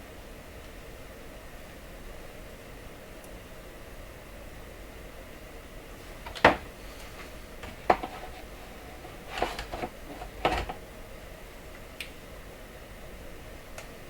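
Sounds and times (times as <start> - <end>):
steady faint hiss: 5.8 - 12.1
tools clicking on workbench: 6.1 - 10.8.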